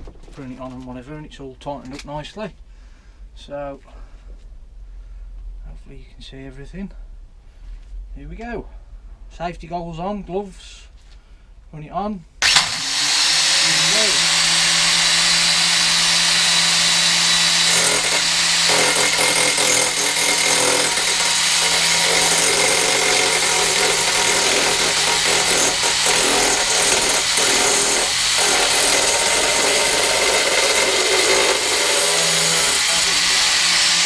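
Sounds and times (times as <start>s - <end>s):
angle grinder cutting: 12.4s - 34.0s.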